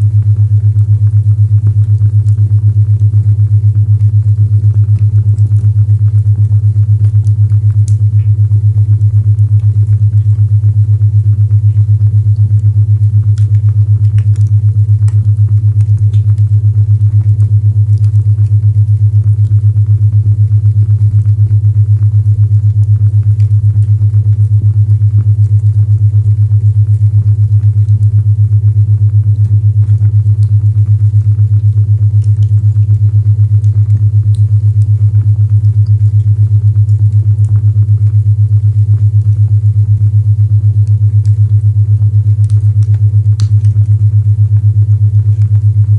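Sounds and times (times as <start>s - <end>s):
pulsing low-pitched tone: 0.0s - 1.2s
pulsing low tone: 0.0s - 2.8s, 7.1s - 16.6s, 34.2s - 37.0s
fireplace crackle: 13.4s - 15.2s.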